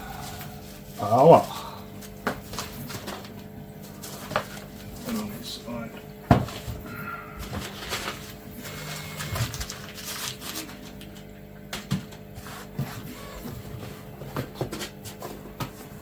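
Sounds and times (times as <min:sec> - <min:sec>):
packaging rustling: 0:07.4 - 0:15.8.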